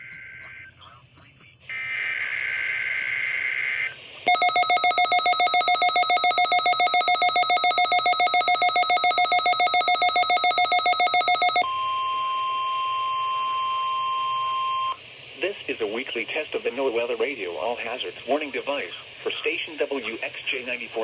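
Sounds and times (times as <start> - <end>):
rapidly pulsing alert beeps: 4.3 - 11.6.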